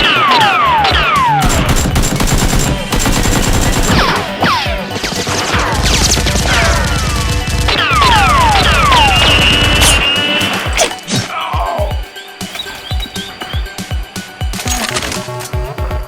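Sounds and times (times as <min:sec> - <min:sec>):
background music: 0:00.0 - 0:16.0
rapid gunfire: 0:01.4 - 0:10.2.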